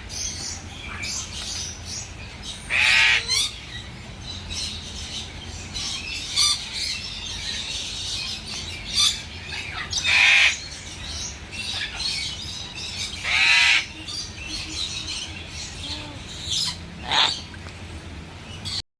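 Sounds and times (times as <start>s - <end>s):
parrots squawking and chirping: 2.4s - 3.9s, 5.7s - 17.6s.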